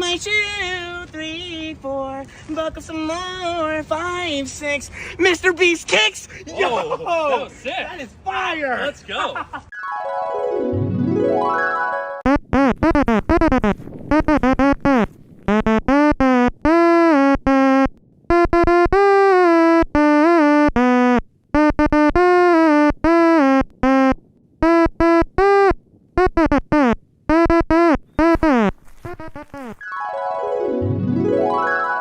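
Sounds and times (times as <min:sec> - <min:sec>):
synthesizer melody: 0:09.7 - 0:13.2, 0:29.8 - 0:32.0.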